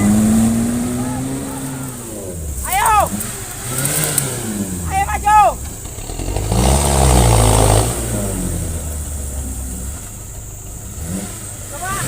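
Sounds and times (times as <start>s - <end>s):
off-road vehicle engine revving: 0.0s - 12.0s.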